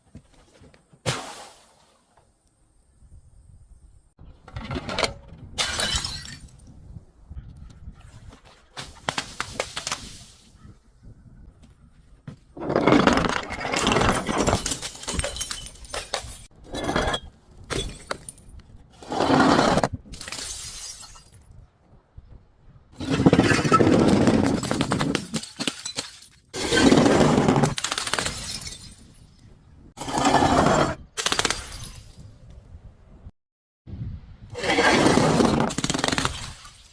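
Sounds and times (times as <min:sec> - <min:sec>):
glass bottles shattering: 0:05.6 - 0:06.6, 0:13.8 - 0:18.5, 0:20.2 - 0:21.4, 0:24.4 - 0:27.0, 0:27.8 - 0:29.3, 0:31.3 - 0:32.3.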